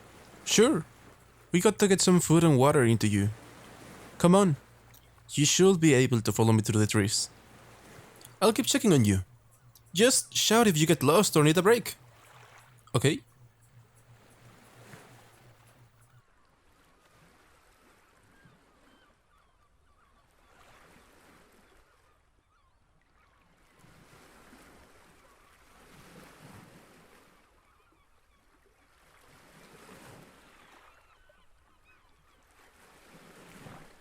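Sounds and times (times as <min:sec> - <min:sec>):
surf washing ashore: 0:00.0 - 0:09.2, 0:10.0 - 0:13.2
seabird calls: 0:00.0 - 0:16.0.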